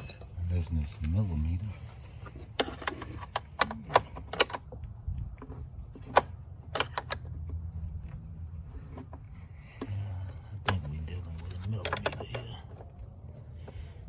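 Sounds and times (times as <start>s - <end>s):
metal tools clinking: 0.0s - 1.5s.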